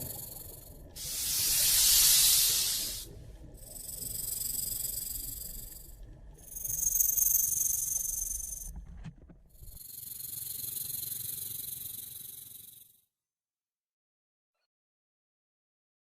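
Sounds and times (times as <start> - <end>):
snake hissing: 0.0 - 8.4, 9.8 - 12.8.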